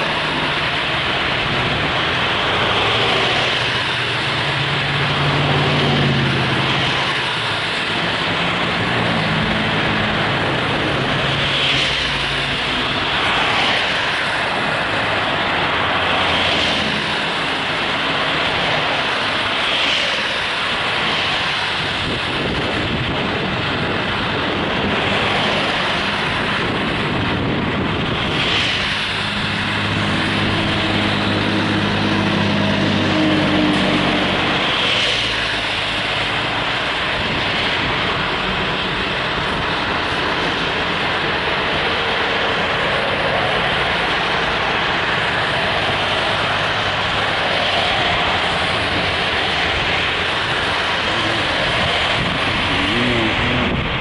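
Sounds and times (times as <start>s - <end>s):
road and wind noise: 0.0s - 54.0s
vehicles swishing past: 0.0s - 54.0s
low engine hum: 48.0s - 54.0s.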